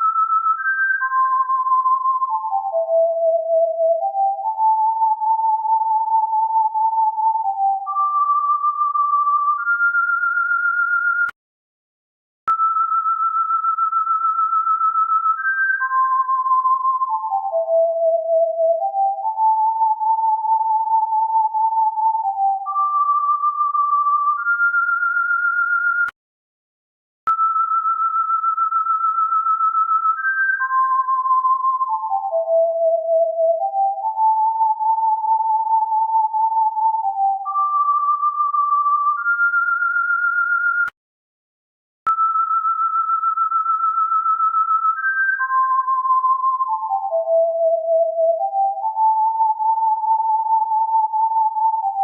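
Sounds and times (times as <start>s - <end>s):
electronic sine-wave tones: 0.0s - 11.3s.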